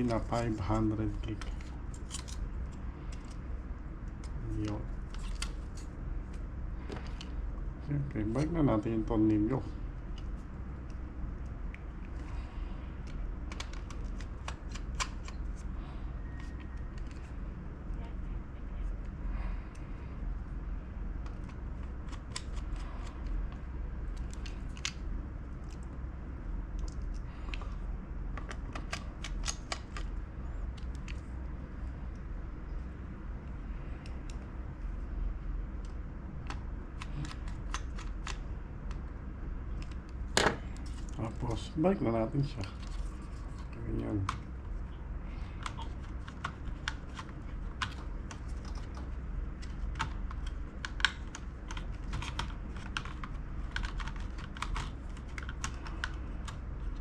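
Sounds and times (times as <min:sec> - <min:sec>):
low steady hum: 0:00.0 - 0:57.0.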